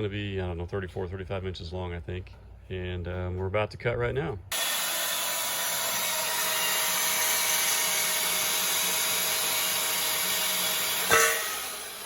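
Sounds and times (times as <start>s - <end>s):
power tool cutting steel tubing: 4.5s - 12.0s.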